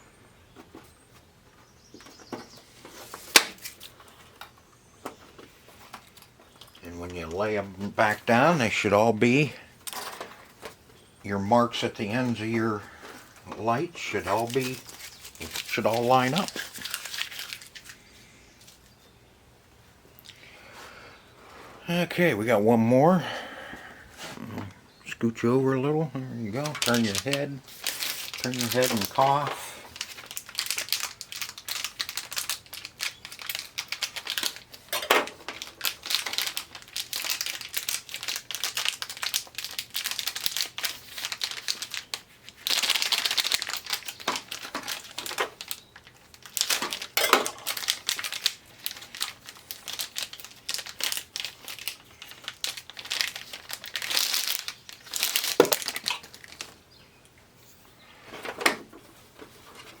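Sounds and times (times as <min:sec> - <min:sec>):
tape and plastic crinkling: 0:01.9 - 0:10.8, 0:11.6 - 0:19.0, 0:26.5 - 0:56.8.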